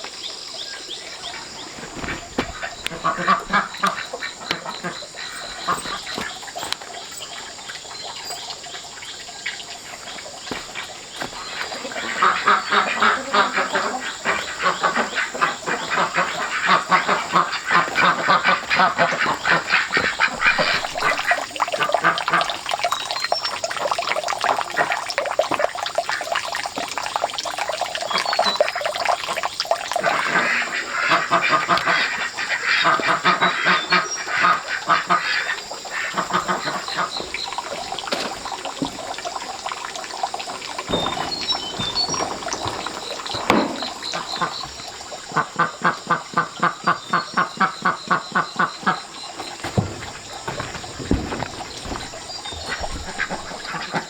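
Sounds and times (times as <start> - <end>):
ducks quacking: 1.2 - 7.0, 9.8 - 22.6, 30.0 - 39.2, 40.0 - 54.0.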